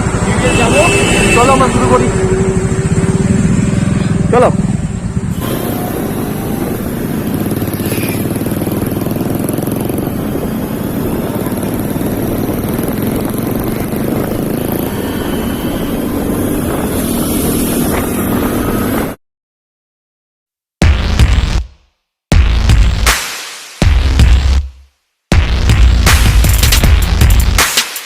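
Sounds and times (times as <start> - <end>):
motorcycles running: 0.0 - 19.2.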